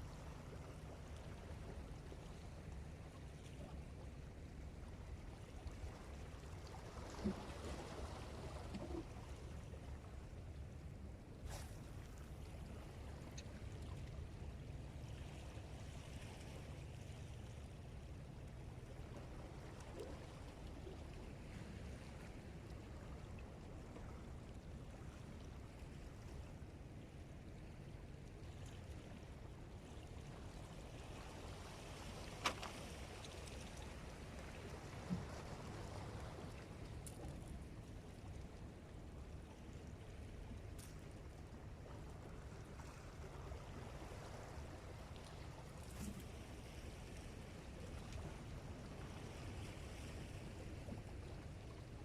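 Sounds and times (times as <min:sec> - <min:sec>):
sea water along shore: 0:00.0 - 0:52.0
wind: 0:00.0 - 0:52.0
faint ticks: 0:13.2 - 0:14.2, 0:36.8 - 0:37.5.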